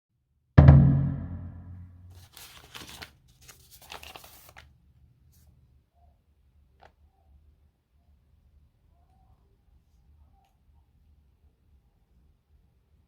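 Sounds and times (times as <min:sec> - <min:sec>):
low ringing musical hit: 0:00.6 - 0:01.9
rustling: 0:02.1 - 0:04.6.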